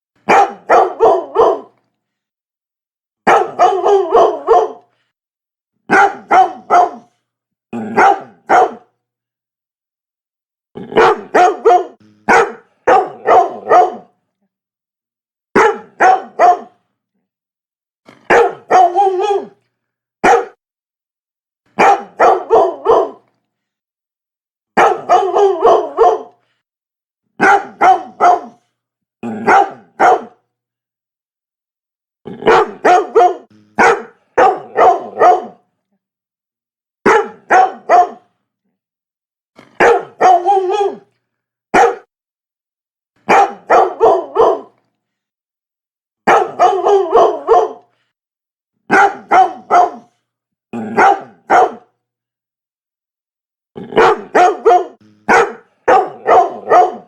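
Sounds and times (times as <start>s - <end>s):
dog barking: 0.2s - 1.8s, 3.2s - 4.9s, 5.9s - 7.2s, 7.8s - 9.0s, 10.9s - 14.1s, 15.5s - 16.8s, 18.2s - 19.6s, 20.2s - 20.6s, 21.8s - 23.3s, 24.8s - 26.4s, 27.4s - 28.7s, 29.4s - 30.4s, 32.4s - 35.6s, 37.1s - 38.3s, 39.6s - 41.1s, 41.7s - 42.1s, 43.2s - 44.8s, 46.2s - 47.9s, 48.9s - 50.1s, 50.8s - 51.9s, 53.9s - 57.0s.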